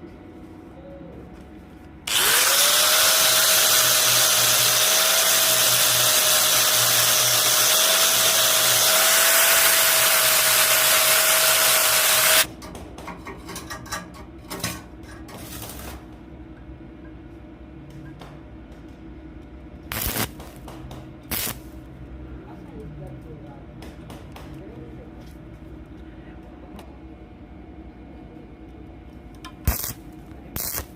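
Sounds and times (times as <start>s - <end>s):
electric power tool whining: 2.1s - 12.5s.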